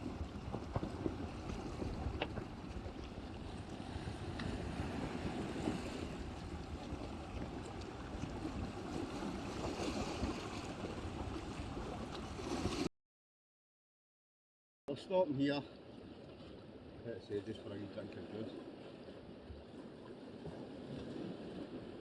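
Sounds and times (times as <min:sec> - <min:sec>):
water splashing and lapping: 0:00.0 - 0:12.9, 0:15.5 - 0:22.0
wind rumbling on microphone: 0:00.0 - 0:12.9.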